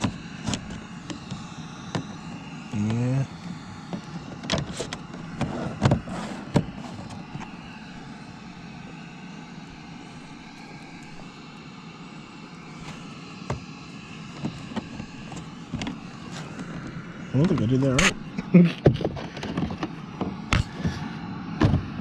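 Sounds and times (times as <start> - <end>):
clicks and knocks on car door: 21.6 - 22.0.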